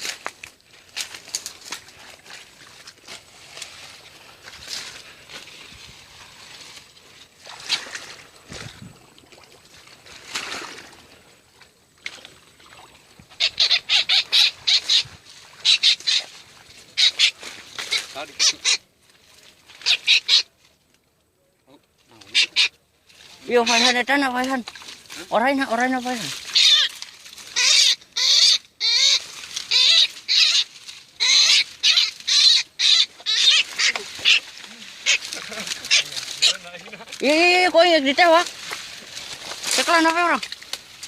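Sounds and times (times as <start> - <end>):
rustling: 0.0 - 8.9, 23.0 - 28.2, 29.0 - 41.0
animal high-pitched calls: 13.3 - 18.9, 19.8 - 20.5, 22.3 - 22.8, 23.5 - 24.1, 26.3 - 38.4.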